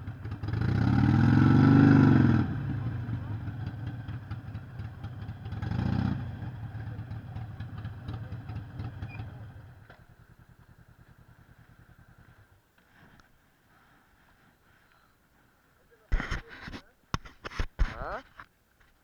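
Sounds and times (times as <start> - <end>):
motorcycle engine idling: 0.0 - 12.8.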